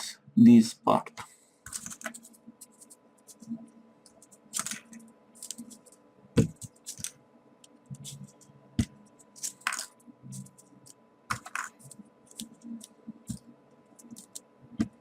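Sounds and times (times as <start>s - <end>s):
paper clicks and rustles: 1.7s - 3.5s, 4.2s - 7.1s, 9.3s - 13.4s.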